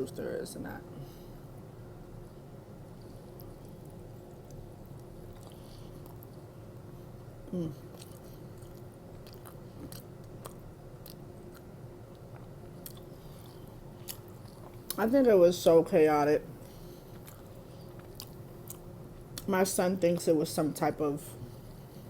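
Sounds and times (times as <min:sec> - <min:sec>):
close-up chewing: 0:02.8 - 0:07.2, 0:07.8 - 0:15.0, 0:16.6 - 0:19.5.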